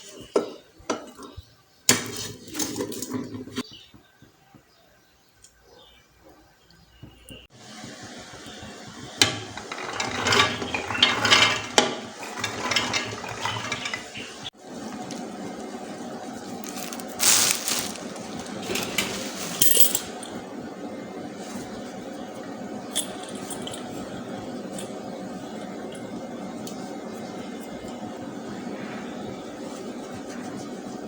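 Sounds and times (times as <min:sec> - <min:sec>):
kitchen utensils and dishes clinking: 0:09.2 - 0:14.5, 0:16.6 - 0:20.4.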